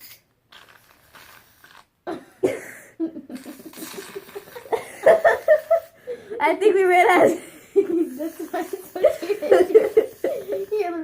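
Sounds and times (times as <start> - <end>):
faint hiss: 0.0 - 11.0
girl coughing: 2.1 - 4.0, 8.2 - 10.9.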